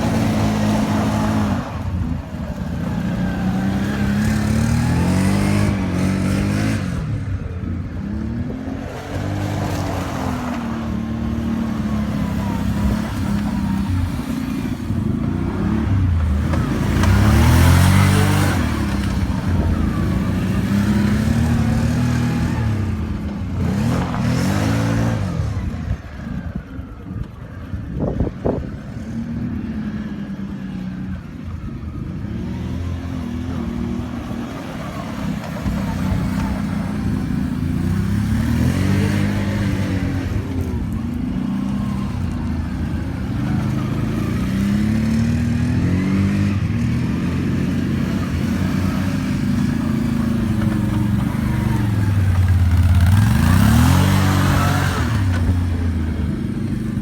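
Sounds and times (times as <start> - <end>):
tyre noise: 0.0 - 26.4, 31.2 - 57.0
atv engine revving: 0.0 - 57.0
rushing wind: 0.0 - 57.0.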